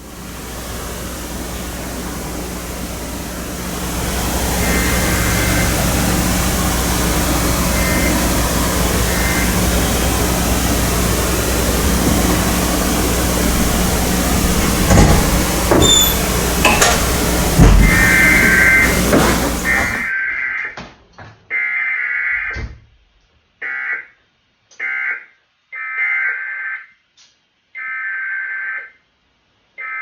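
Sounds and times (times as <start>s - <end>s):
low hum: 0.0s - 20.1s
radio static hiss: 0.0s - 20.1s
sharp clicks and knocks: 0.4s - 20.1s.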